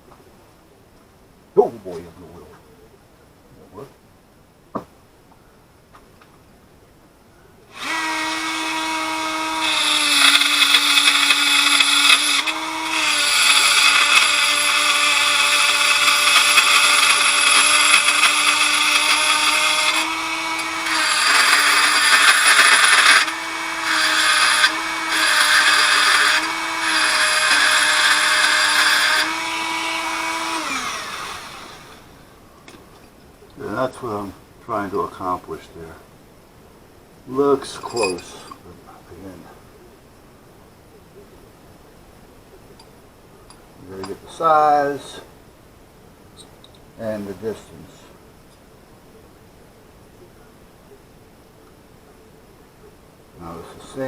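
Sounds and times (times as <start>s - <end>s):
power tool grinding into steel: 7.7s - 32.8s, 37.6s - 38.6s.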